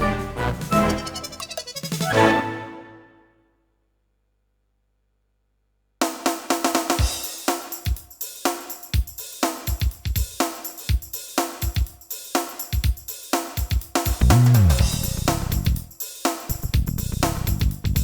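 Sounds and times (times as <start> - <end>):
drum kit groove: 0.0 - 2.2, 6.0 - 18.0
synth parts: 0.0 - 3.4.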